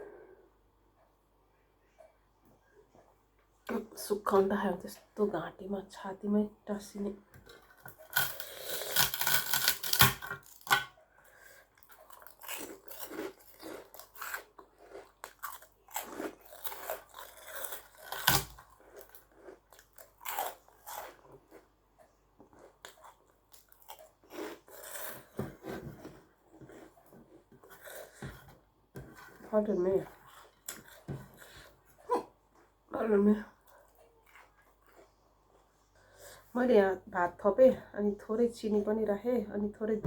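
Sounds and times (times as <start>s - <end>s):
chewing and mouth noises: 11.4s - 25.2s, 33.5s - 36.0s.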